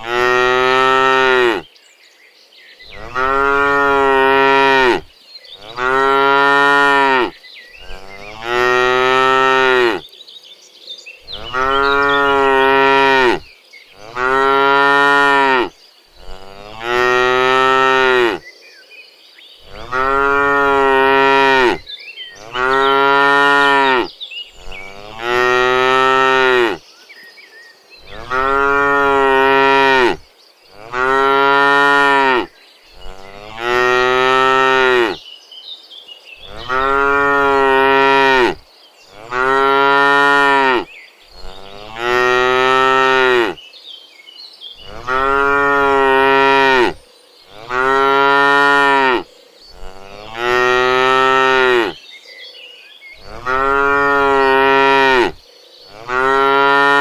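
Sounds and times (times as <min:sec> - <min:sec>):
cattle mooing: 0:00.0 - 0:01.6, 0:02.9 - 0:10.0, 0:11.4 - 0:13.4, 0:14.0 - 0:18.4, 0:19.7 - 0:21.8, 0:22.4 - 0:26.8, 0:28.0 - 0:30.2, 0:30.8 - 0:35.2, 0:36.4 - 0:38.6, 0:39.2 - 0:43.6, 0:44.8 - 0:49.2, 0:49.8 - 0:52.0, 0:53.2 - 0:55.4, 0:56.0 - 0:57.0.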